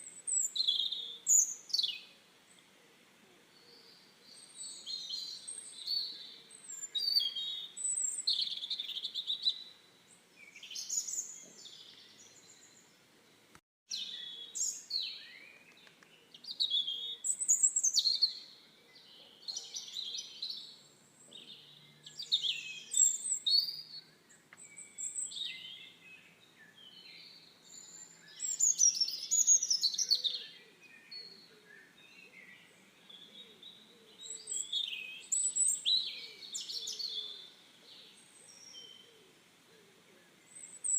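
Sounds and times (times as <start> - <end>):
birds singing and chirping: 0.0 - 2.8, 3.5 - 40.9.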